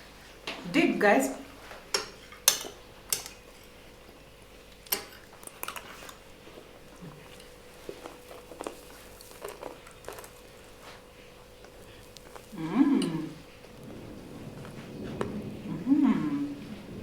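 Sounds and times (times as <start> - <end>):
cutlery clinking against plates: 1.9 - 3.8, 4.8 - 6.2.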